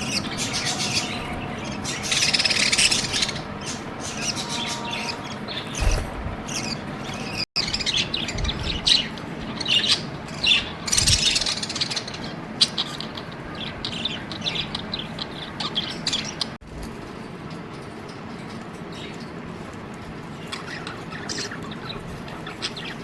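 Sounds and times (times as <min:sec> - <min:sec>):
budgerigars chirping: 0:00.0 - 0:16.6.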